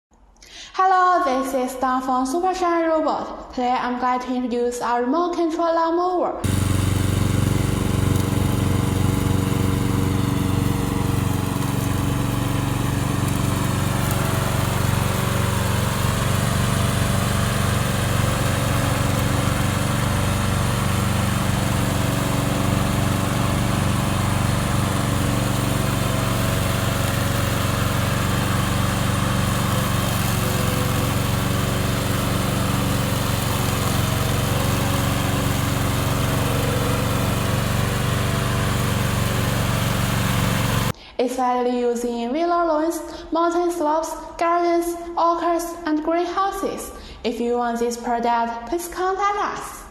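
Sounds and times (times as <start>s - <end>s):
lawn mower engine running: 6.4s - 40.9s.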